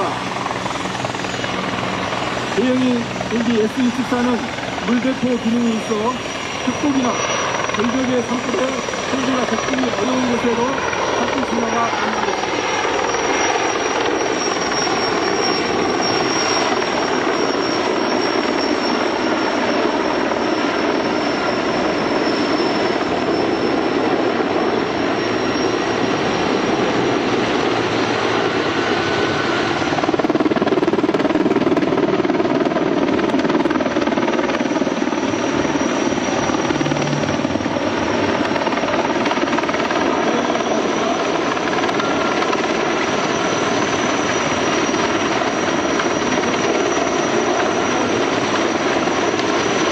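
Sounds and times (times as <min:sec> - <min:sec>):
helicopter rotor and turbine drone: 0:00.0 - 0:49.9
thin high whine: 0:34.8 - 0:42.3.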